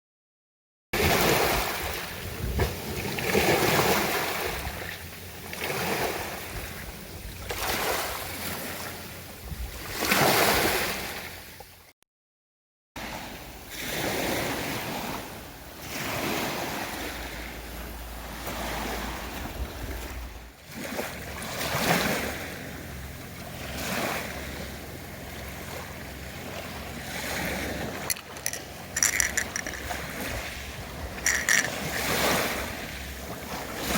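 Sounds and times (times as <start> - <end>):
wind on microphone: 1.0 - 5.0, 5.8 - 11.1, 18.5 - 20.5
sea waves breaking on shore: 1.0 - 11.8, 13.0 - 33.9.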